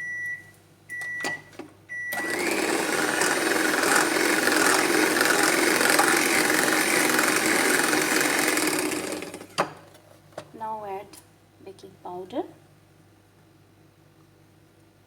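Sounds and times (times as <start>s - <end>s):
electric hand mixer running: 2.1s - 9.7s.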